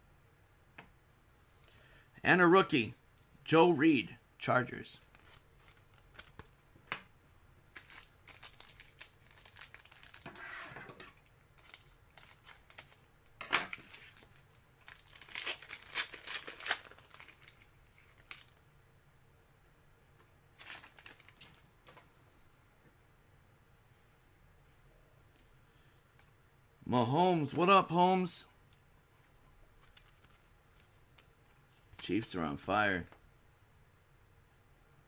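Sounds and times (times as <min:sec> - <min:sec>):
card wrappers crinkling: 0:05.0 - 0:06.7, 0:07.7 - 0:10.4, 0:11.1 - 0:13.1, 0:13.7 - 0:18.6, 0:20.5 - 0:22.0, 0:29.4 - 0:32.1.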